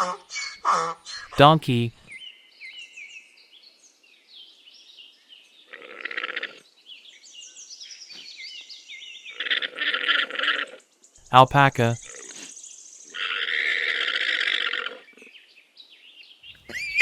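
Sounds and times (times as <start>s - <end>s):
small birds chirping: 6.5s - 9.4s, 15.1s - 17.0s
donkey braying: 16.7s - 17.0s.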